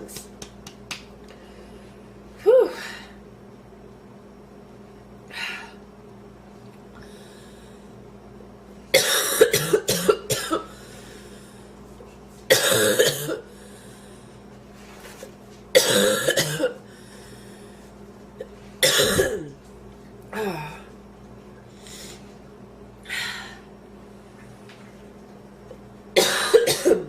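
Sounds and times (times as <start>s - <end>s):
woman coughing: 9.0s - 10.7s, 12.5s - 13.5s, 15.8s - 16.8s, 18.8s - 19.6s, 26.2s - 27.0s.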